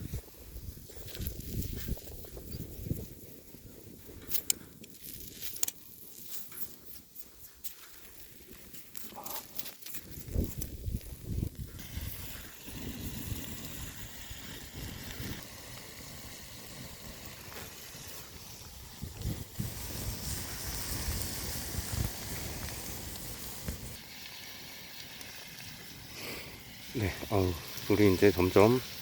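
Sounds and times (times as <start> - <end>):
wind rumbling on microphone: 0.0 - 5.7, 9.1 - 24.0
meat sizzling: 0.0 - 29.0.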